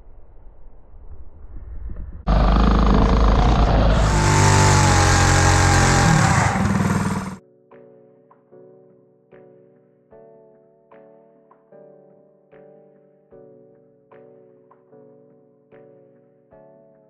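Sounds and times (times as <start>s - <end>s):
small engine running at high revs: 2.3s - 7.4s.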